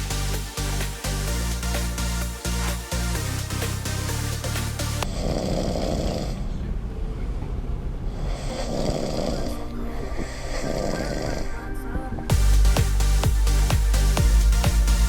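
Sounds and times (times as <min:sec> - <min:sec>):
man snoring: 0:05.0 - 0:06.5, 0:08.2 - 0:11.6.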